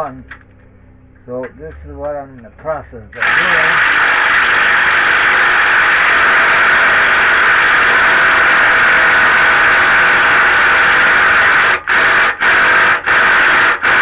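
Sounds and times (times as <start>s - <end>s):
power drill running: 3.2s - 14.0s.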